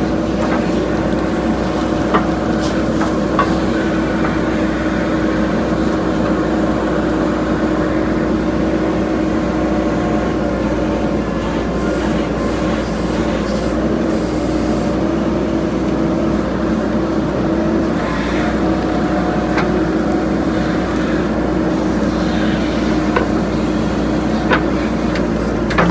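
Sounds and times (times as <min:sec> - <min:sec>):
diesel engine running: 0:00.0 - 0:25.9.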